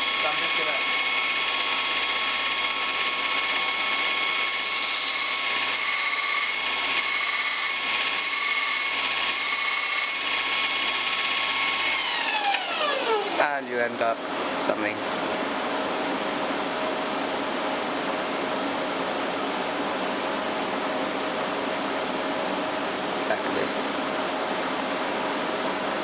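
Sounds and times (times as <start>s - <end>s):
belt grinder motor whine: 0.0s - 13.8s
grinder spinning down: 11.2s - 13.7s.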